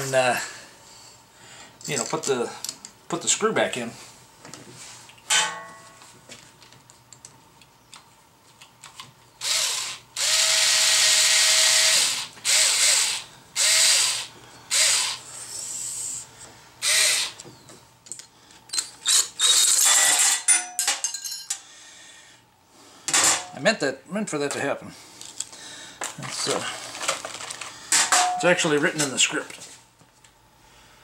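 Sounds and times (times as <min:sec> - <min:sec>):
power drill whining: 0:09.4 - 0:16.1, 0:16.8 - 0:17.6, 0:18.7 - 0:20.1.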